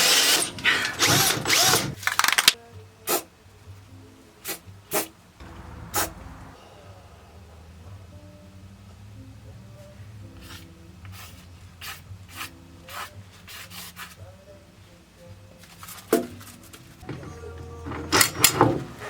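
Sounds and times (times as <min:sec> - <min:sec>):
low steady hum: 0:05.4 - 0:12.8
metal hardware scraping and rubbing: 0:15.6 - 0:19.0.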